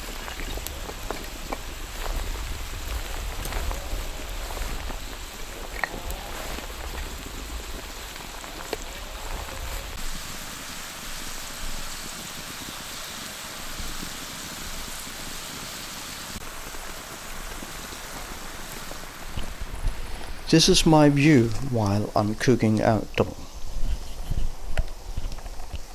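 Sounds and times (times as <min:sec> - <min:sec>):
mushrooms sizzling in a pan: 0:00.0 - 0:24.0.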